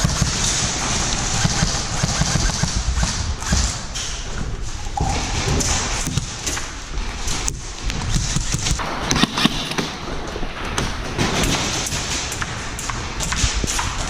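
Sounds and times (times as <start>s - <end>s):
footsteps and gear knocking: 4.4s - 8.8s.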